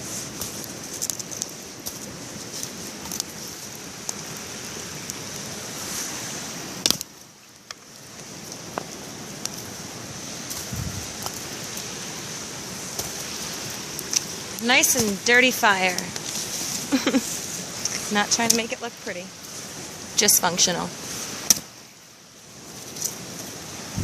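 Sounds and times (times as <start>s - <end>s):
river water rushing: 0.0s - 24.0s
sharp clicks and crackles: 0.3s - 4.4s.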